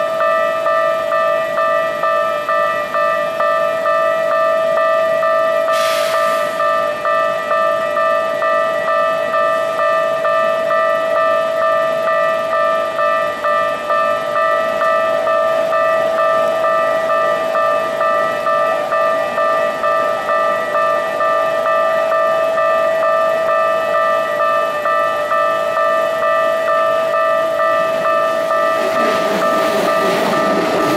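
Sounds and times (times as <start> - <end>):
level crossing warning bell: 0.0 - 30.9
brief hiss: 5.7 - 6.6.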